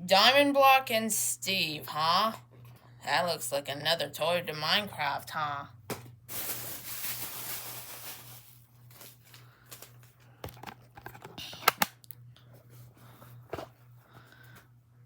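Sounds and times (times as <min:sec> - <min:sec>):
low steady hum: 0:00.0 - 0:15.0
packaging rustling: 0:06.3 - 0:11.9
plastic items clicking and tapping: 0:09.7 - 0:12.0.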